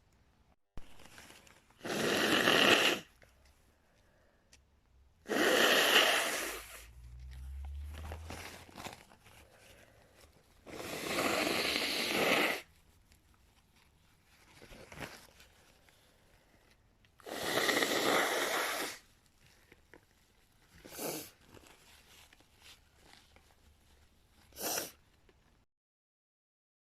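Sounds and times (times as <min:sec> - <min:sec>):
person blowing nose: 0:01.8 - 0:03.2, 0:05.2 - 0:06.9, 0:10.6 - 0:12.7, 0:17.2 - 0:19.0, 0:20.8 - 0:21.4, 0:24.5 - 0:25.0
snuffling: 0:24.4 - 0:25.1.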